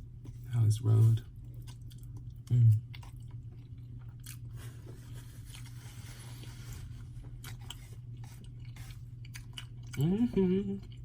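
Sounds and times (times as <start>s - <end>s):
chewing with wet mouth clicks: 1.3s - 4.5s, 7.3s - 11.0s.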